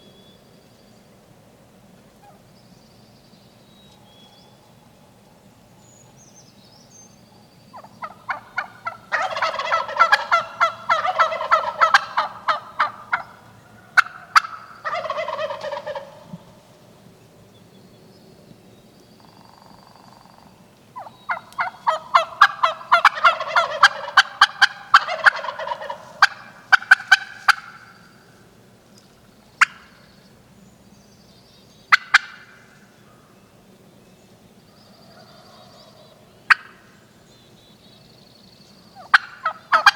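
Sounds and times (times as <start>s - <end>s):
turkey calling: 7.7s - 16.7s, 19.2s - 28.2s, 29.2s - 30.1s, 31.9s - 33.3s, 35.0s - 36.9s, 39.0s - 39.9s.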